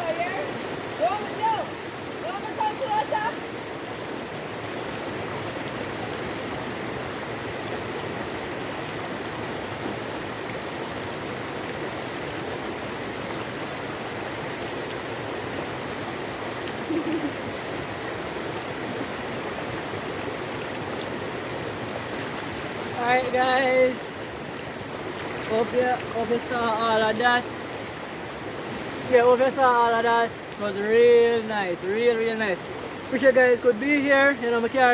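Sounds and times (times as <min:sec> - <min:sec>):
river water flowing: 0:00.0 - 0:34.9.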